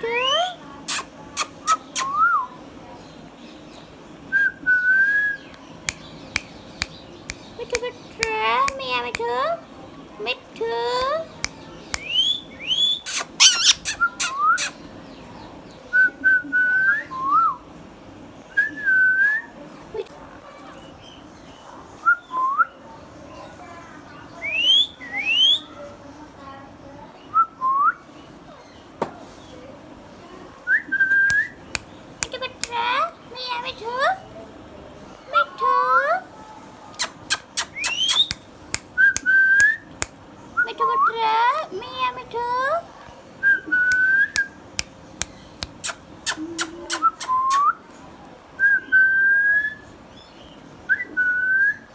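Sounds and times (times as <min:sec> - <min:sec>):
sharp click: 0:05.5 - 0:09.3, 0:11.0 - 0:12.2, 0:13.1 - 0:14.8, 0:37.0 - 0:40.2, 0:43.9 - 0:47.6
parakeet whistling: 0:12.0 - 0:14.8, 0:37.0 - 0:38.4.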